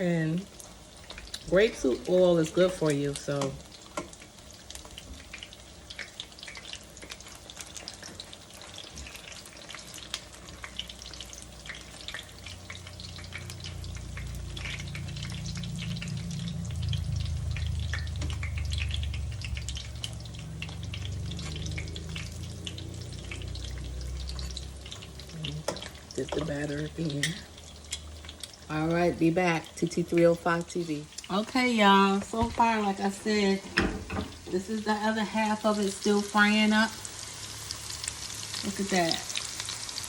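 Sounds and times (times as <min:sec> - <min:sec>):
food frying in hot oil: 0:00.0 - 0:40.0
low hum: 0:12.0 - 0:28.4.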